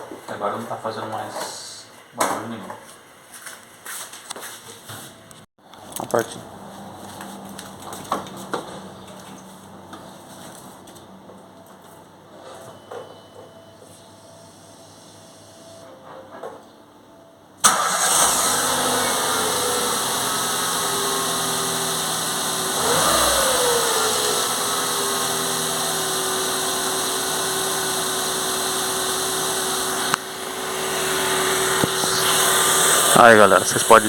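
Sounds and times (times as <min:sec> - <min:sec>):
car engine starting and idling: 0:17.6 - 0:34.0.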